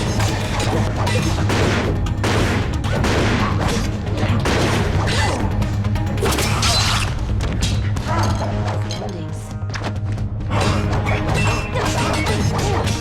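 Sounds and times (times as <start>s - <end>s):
fight crashes booms and impacts: 0.0s - 5.6s
dark music score with low drone: 0.0s - 13.0s.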